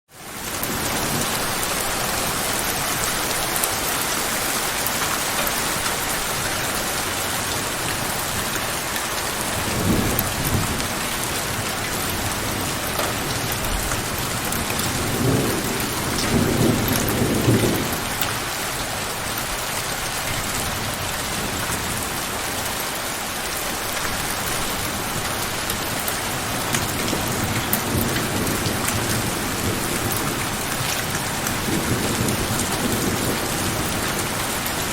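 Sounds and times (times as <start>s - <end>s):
heavy rain falling: 0.1s - 34.9s
thunder rumbling: 0.4s - 22.3s, 24.4s - 34.9s.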